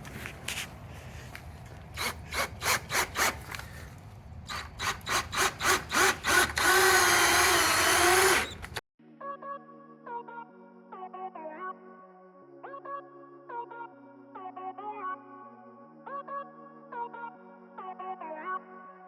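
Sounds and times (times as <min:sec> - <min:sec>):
power drill whirring: 0:01.7 - 0:08.8.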